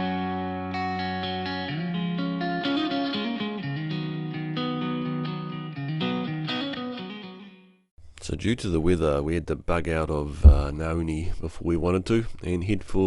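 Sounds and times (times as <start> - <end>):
guitar background music: 0.0 - 7.8.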